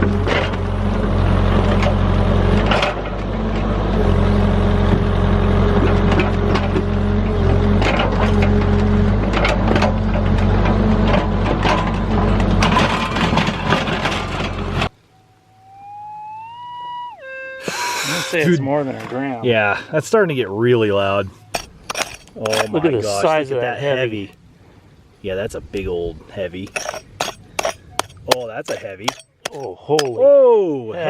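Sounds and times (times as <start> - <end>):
excavator diesel engine running: 0.0 - 14.9
bucket scraping rocky ground: 7.7 - 14.9, 21.0 - 23.4, 26.4 - 30.1
metal detector rising tone: 15.0 - 18.6
rocks clacking and knocking: 21.4 - 23.2, 26.6 - 30.2.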